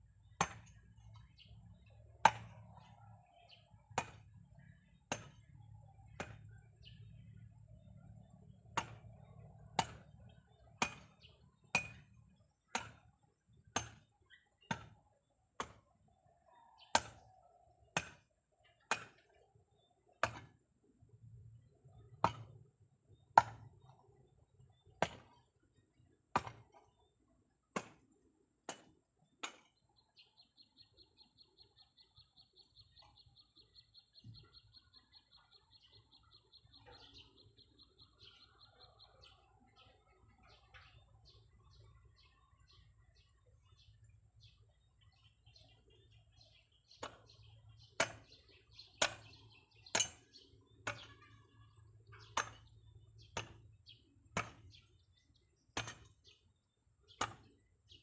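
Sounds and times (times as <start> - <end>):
hand tool chopping strikes: 23.4 - 23.7, 26.3 - 26.8, 27.7 - 28.0, 54.4 - 54.8, 57.1 - 57.5.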